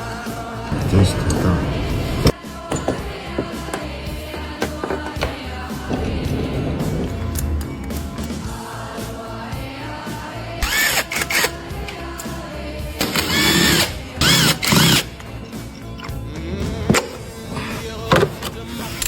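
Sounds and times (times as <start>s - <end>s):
background music: 0.0s - 19.0s
power tool bursts: 10.6s - 11.6s, 13.0s - 15.2s.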